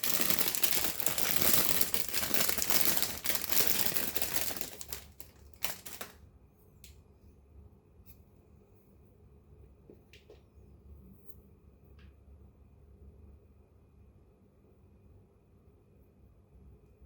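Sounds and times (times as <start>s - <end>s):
plastic packaging crinkling: 0.0s - 6.2s.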